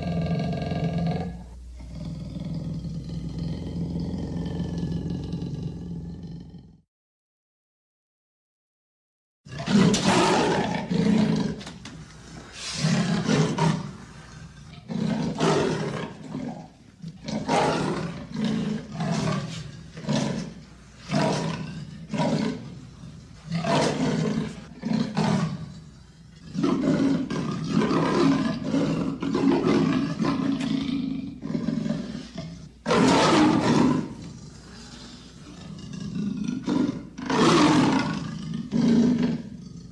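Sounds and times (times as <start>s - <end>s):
leopard roaring: 0.0s - 6.8s, 9.5s - 11.8s, 12.5s - 39.9s.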